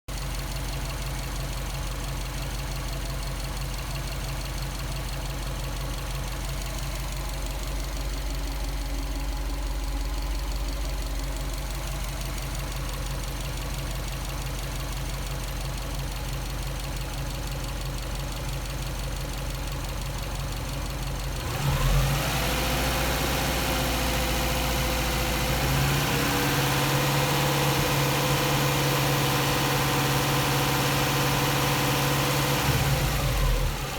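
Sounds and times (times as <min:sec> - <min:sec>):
car engine idling: 0:00.1 - 0:33.9.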